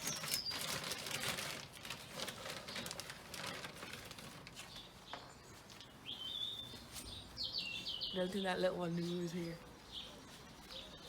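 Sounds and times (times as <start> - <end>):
bird chirp: 0.0 - 0.8, 4.6 - 11.0.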